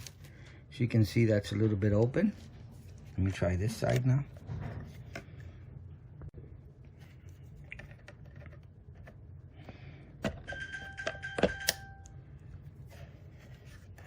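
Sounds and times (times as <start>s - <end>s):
short ringing tone: 10.5s - 12.2s.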